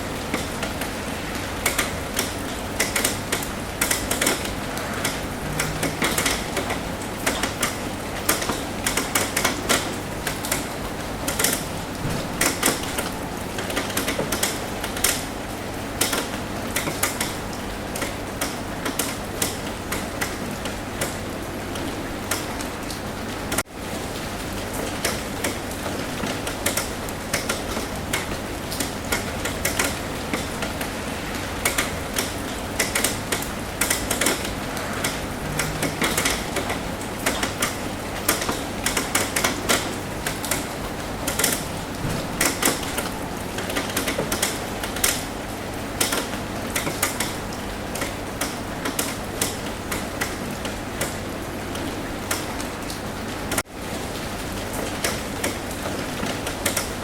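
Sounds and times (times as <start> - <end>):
rain on a roof: 0.0 - 57.0.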